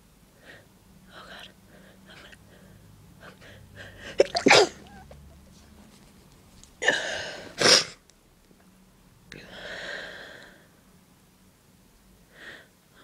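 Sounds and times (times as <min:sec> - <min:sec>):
person sneezing: 0:04.2 - 0:05.1, 0:06.8 - 0:08.0.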